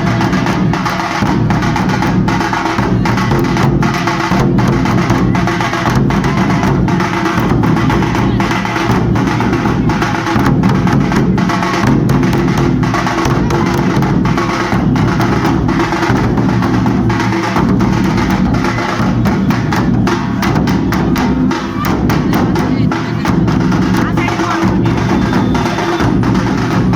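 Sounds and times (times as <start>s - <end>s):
frame drums beaten with sticks: 0.0s - 26.9s.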